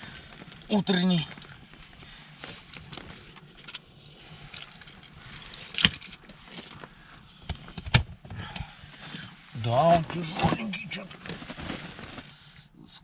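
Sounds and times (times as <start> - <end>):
handling rustling and clicking: 0.1 - 8.3.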